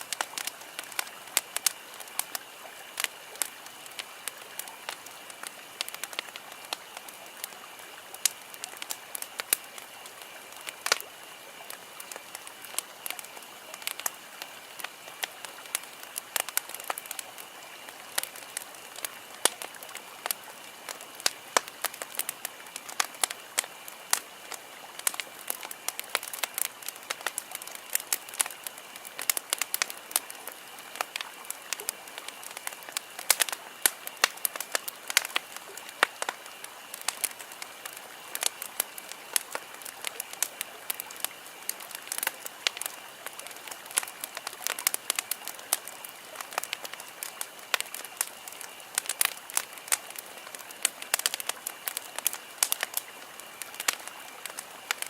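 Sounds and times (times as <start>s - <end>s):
campfire crackling and popping: 0.0s - 55.0s
soft steady hiss: 0.0s - 55.0s.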